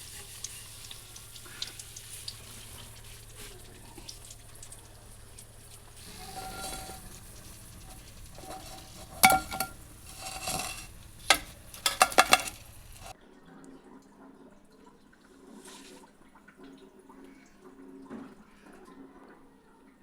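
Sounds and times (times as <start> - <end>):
faint frying sizzle: 0.0 - 13.2
metal utensils clinking on pan: 5.2 - 13.1.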